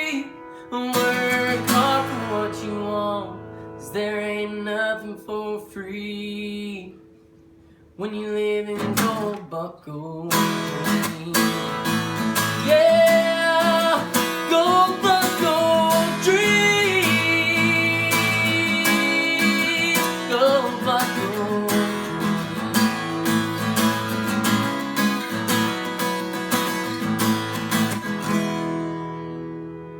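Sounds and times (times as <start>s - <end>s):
country song: 0.0s - 7.3s, 7.9s - 29.9s
strummed acoustic guitar: 0.0s - 29.9s
bending guitar lead line: 10.3s - 29.9s.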